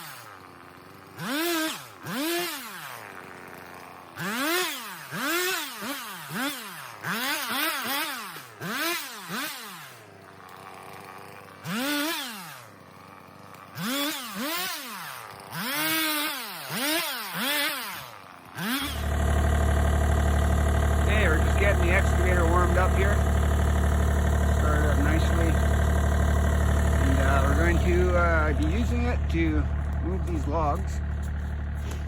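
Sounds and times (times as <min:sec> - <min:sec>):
chainsaw revving: 0:00.0 - 0:32.0
diesel engine idling: 0:18.8 - 0:32.0.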